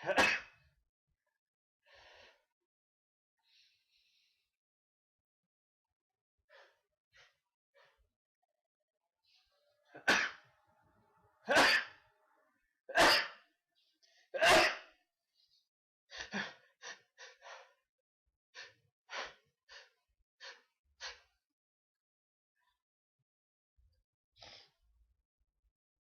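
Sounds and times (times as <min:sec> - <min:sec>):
person sneezing: 0:09.9 - 0:10.5, 0:11.5 - 0:12.0, 0:12.9 - 0:13.4, 0:14.4 - 0:14.9.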